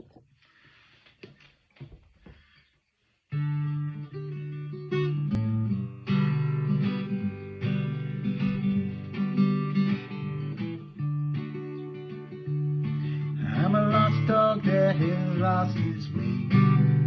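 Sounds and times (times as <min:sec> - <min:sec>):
faint rustling: 0:00.0 - 0:03.4
guitar chords strummed: 0:03.4 - 0:17.0.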